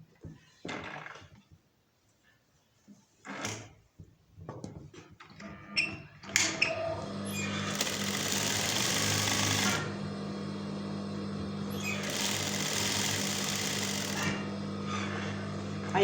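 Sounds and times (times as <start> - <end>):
sewing machine stitching: 6.3 - 10.0, 11.6 - 16.0.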